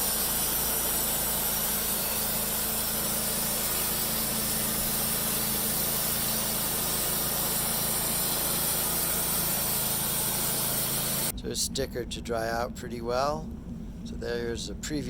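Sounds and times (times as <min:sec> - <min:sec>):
portable sawmill running: 0:00.0 - 0:11.3.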